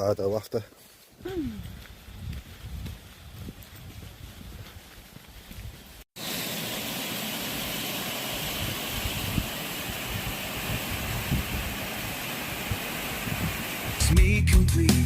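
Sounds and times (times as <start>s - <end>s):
waterfall rushing: 6.2s - 14.0s.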